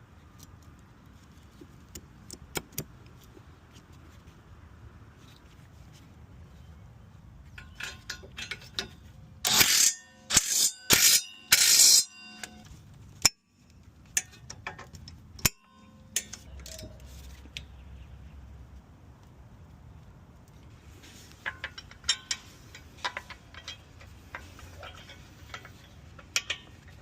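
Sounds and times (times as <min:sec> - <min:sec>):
metal clicks and clinks: 0:07.6 - 0:17.1, 0:21.4 - 0:27.0.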